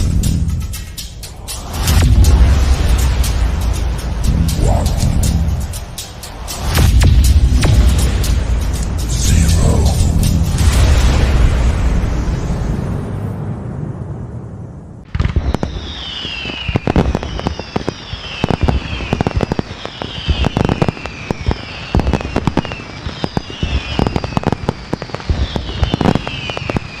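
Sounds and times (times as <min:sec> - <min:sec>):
fireworks bangs and crackles: 0:00.0 - 0:27.0
falling firework whistle: 0:15.1 - 0:27.0.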